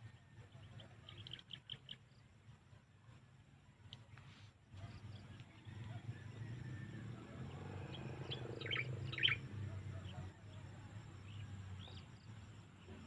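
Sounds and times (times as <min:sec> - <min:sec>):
small birds chirping: 0:00.1 - 0:02.6, 0:07.5 - 0:10.6.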